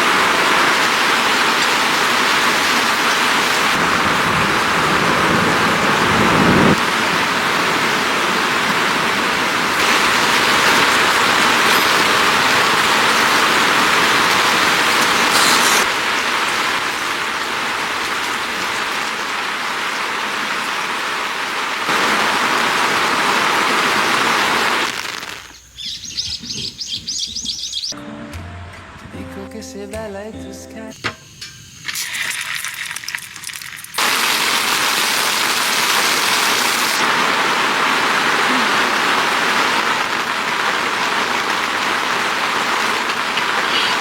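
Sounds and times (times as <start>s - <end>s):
heavy rain pouring: 0.0s - 27.0s, 32.0s - 44.0s
birds chirping: 25.0s - 28.0s, 42.6s - 44.0s.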